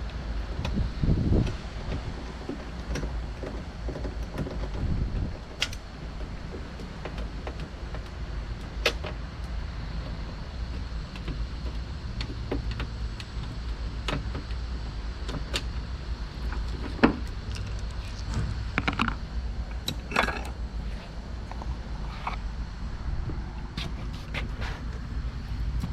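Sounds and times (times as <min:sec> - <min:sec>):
low rumble: 0:16.0 - 0:25.9
hand tools clicking and tapping: 0:16.5 - 0:19.2.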